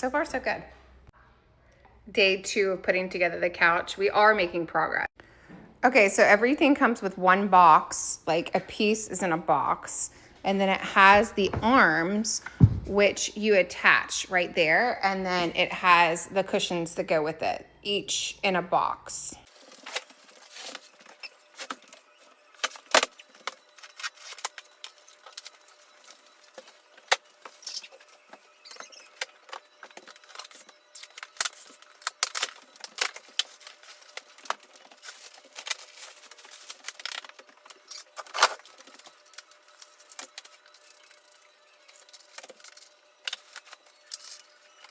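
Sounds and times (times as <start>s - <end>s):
packaging crackling and clicking: 19.5s - 44.9s
packaging snapping: 28.6s - 41.0s.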